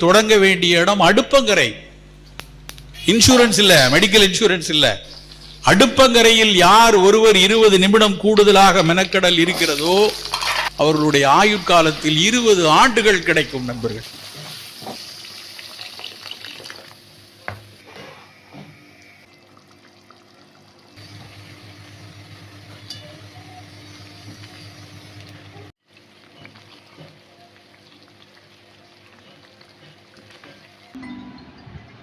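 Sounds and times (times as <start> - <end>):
food sizzling in a pan: 9.3 - 13.1, 14.0 - 18.4, 20.0 - 31.0.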